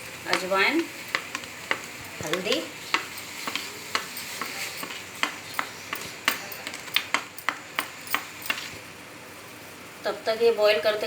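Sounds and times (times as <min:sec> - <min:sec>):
boiling liquid hissing: 0:00.0 - 0:10.0
spoon clinking against pan: 0:00.3 - 0:08.8.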